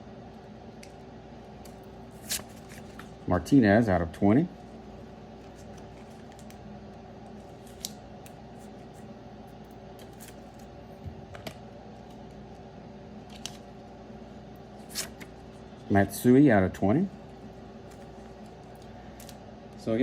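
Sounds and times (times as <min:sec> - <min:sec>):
steady low hum: 0:00.0 - 0:20.0
trading cards in plastic holders handled: 0:01.6 - 0:03.2, 0:05.4 - 0:06.6.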